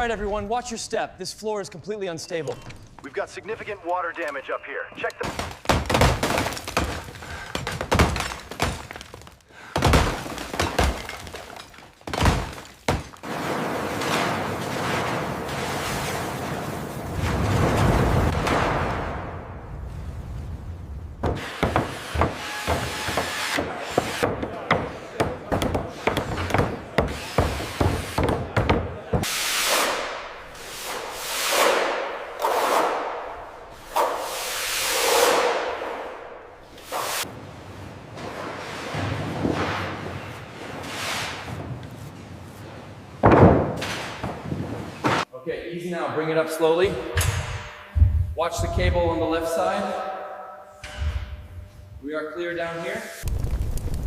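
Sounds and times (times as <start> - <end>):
sledgehammer thuds on plaster: 5.2 - 13.3
plaster cracking: 5.2 - 15.4
debris crumbling: 5.2 - 20.6, 53.2 - 54.0.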